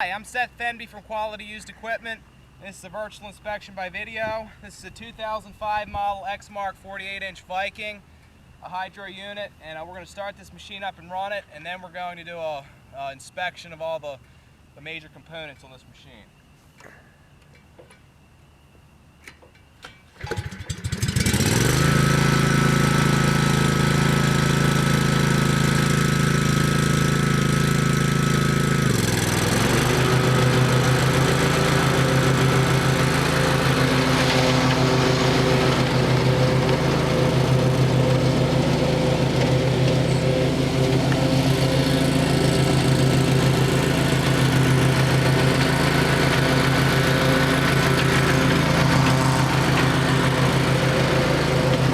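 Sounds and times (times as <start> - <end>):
mower engine starting and running: 19.8 - 51.9.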